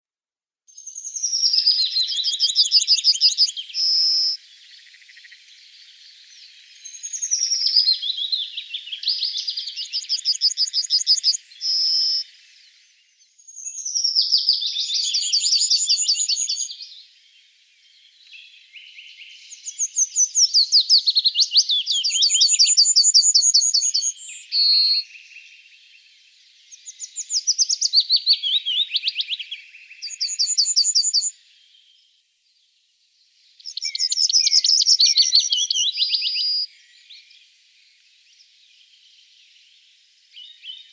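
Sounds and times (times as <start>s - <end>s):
soft bird chirps: 0.0s - 40.9s
songbird singing trilled phrase: 18.2s - 25.9s, 26.7s - 31.4s, 33.6s - 37.4s, 40.4s - 40.9s.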